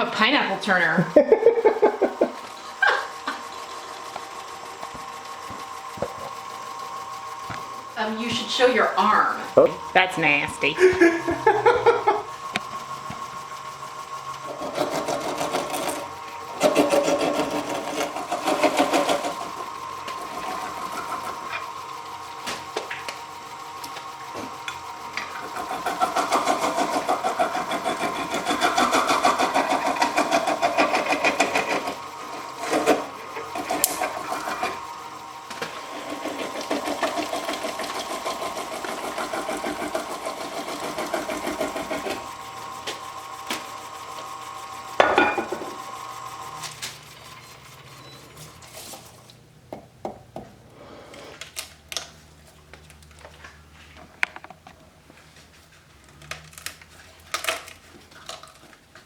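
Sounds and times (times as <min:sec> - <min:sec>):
turning tool chattering: 0:00.0 - 0:48.6
wood lathe running: 0:00.0 - 0:49.4
low steady hum: 0:06.2 - 0:16.7.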